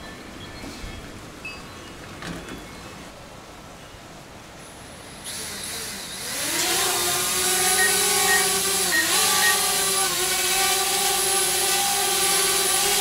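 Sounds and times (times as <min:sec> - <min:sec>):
sudden hiss: 0:04.6 - 0:06.4
drone propellers buzzing: 0:05.3 - 0:13.0.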